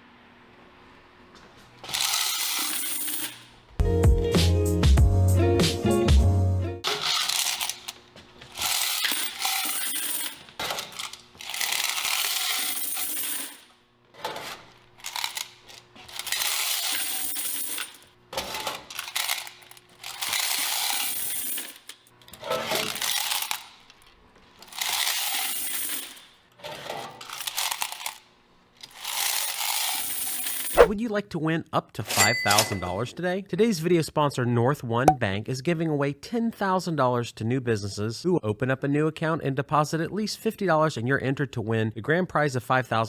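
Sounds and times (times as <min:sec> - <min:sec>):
coins jangling: 0:01.9 - 0:03.5, 0:06.9 - 0:08.0, 0:08.6 - 0:13.7, 0:15.0 - 0:18.1, 0:18.9 - 0:22.0, 0:22.7 - 0:23.6, 0:24.6 - 0:26.4, 0:27.1 - 0:28.2, 0:28.9 - 0:30.9.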